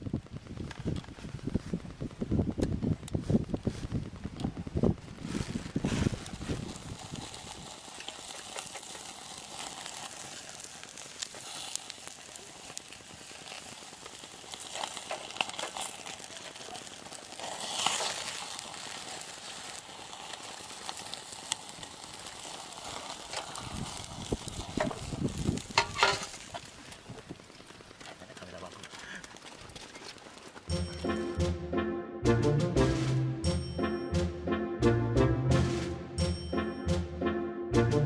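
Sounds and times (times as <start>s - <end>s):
food frying sizzle: 4.8s - 28.8s
utensils clicking and knocking: 25.8s - 26.5s.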